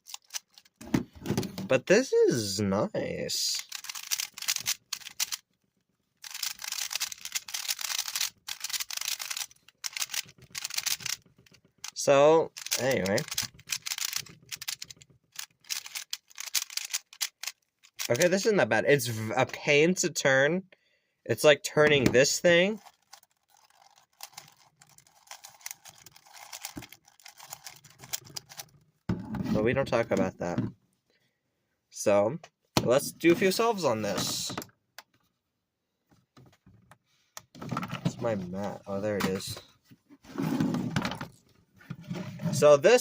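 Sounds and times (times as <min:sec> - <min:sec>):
plastic puzzle cube clacking: 0:00.0 - 0:00.8, 0:03.6 - 0:05.4, 0:06.2 - 0:18.3, 0:22.8 - 0:28.8.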